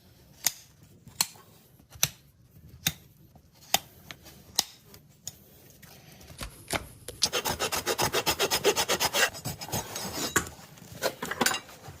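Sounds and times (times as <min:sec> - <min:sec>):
rasp filing a hoof: 0:07.2 - 0:10.4.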